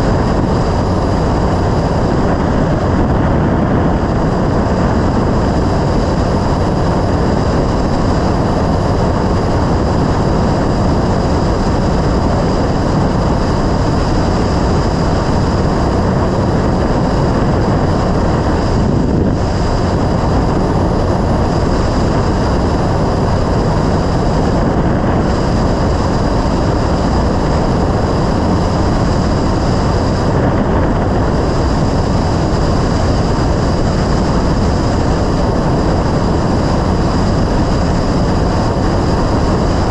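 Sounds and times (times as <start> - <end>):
riding wind noise: 0.0 - 39.9.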